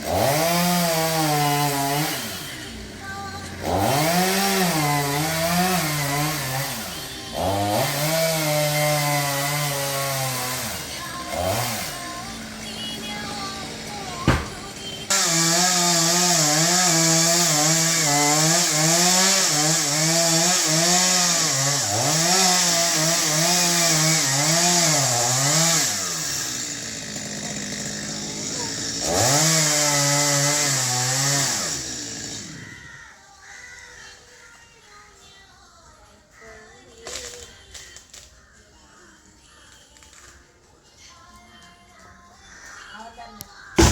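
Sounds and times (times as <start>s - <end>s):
chainsaw cutting wood: 0.0s - 32.8s, 43.7s - 43.9s.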